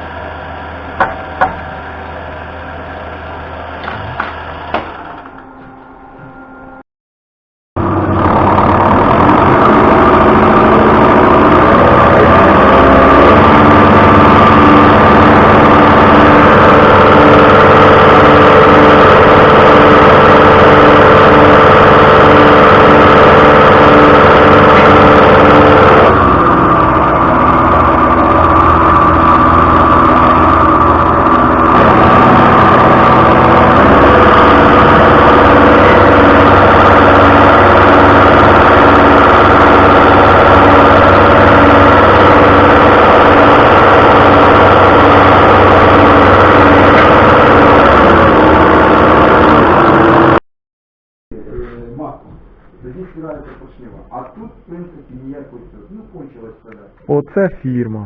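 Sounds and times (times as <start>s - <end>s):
engine running loudly: 7.8s - 50.4s.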